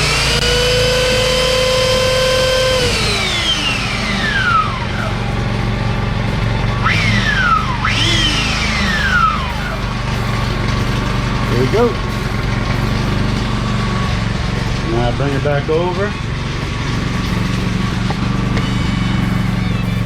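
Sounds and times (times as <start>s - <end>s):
belt sander motor spinning: 0.0s - 20.0s
steady low hum: 0.0s - 20.0s.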